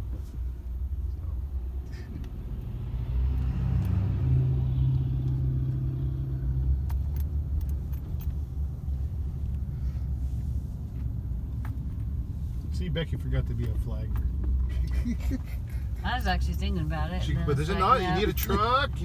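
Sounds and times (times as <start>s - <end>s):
car engine and road rumble: 0.0s - 19.0s
light clicks or jingles: 6.8s - 9.0s, 13.4s - 19.0s.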